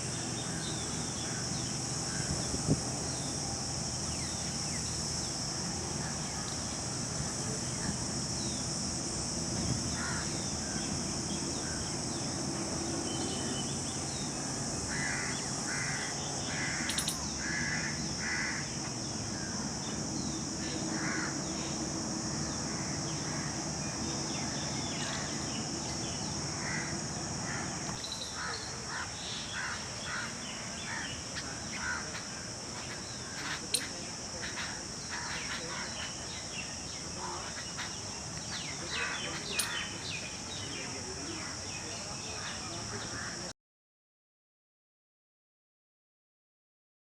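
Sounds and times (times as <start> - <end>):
insects droning: 0.0 - 43.5
birds giving harsh calls: 26.6 - 40.0.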